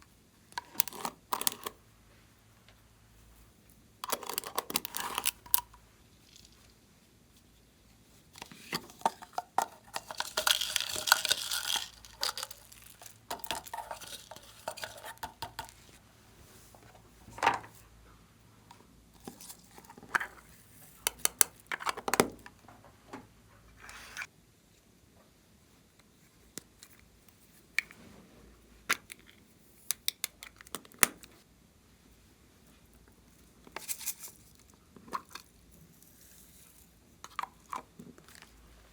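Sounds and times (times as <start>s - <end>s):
plastic crinkling and tearing: 10.0s - 15.2s.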